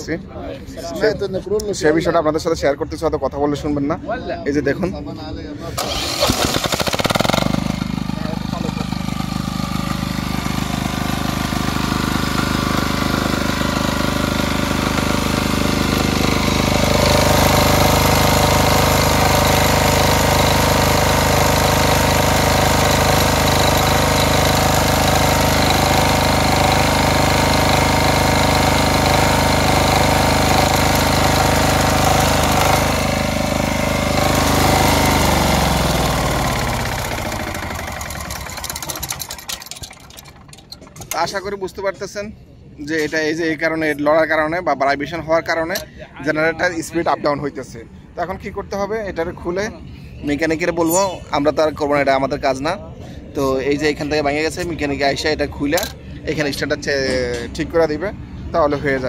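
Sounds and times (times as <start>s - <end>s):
diesel generator engine running unevenly: 5.8s - 41.3s.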